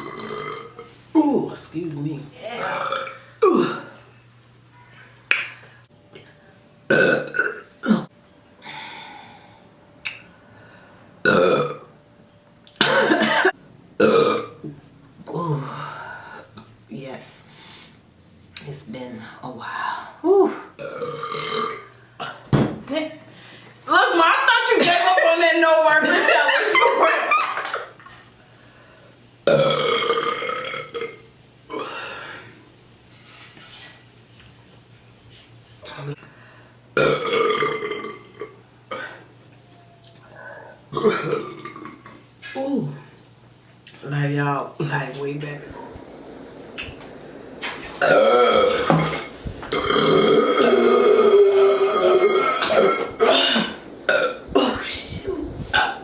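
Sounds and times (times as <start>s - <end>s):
person burping: 0.0s - 0.9s, 2.6s - 4.0s, 6.9s - 8.1s, 11.2s - 11.9s, 12.8s - 14.7s, 20.8s - 22.5s, 29.5s - 32.4s, 37.0s - 39.2s, 40.9s - 42.2s, 46.8s - 56.0s.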